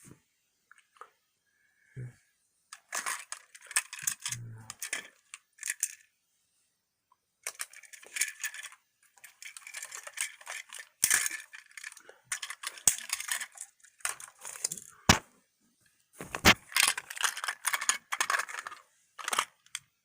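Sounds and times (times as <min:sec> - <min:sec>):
plastic toy train handling: 0:02.7 - 0:06.1, 0:07.4 - 0:15.2, 0:16.2 - 0:20.0.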